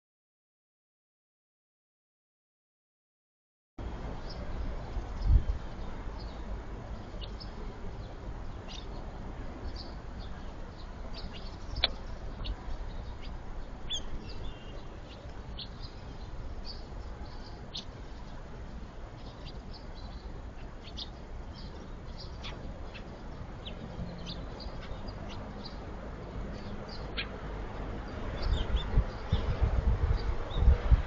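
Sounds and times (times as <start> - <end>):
birds chirping: 3.8 - 31.0.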